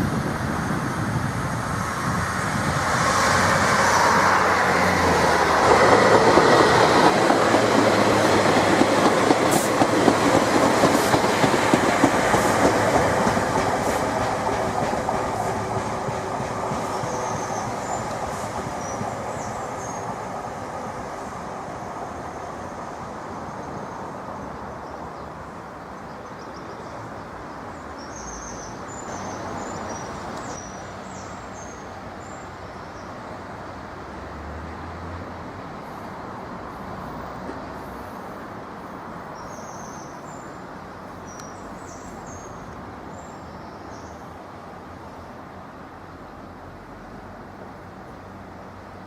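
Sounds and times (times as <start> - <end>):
train rumble: 0.0 - 26.0.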